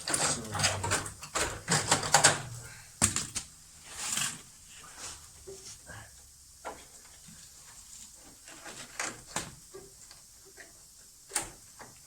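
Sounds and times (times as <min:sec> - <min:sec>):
knocks and clatters of handling: 0:00.0 - 0:03.5.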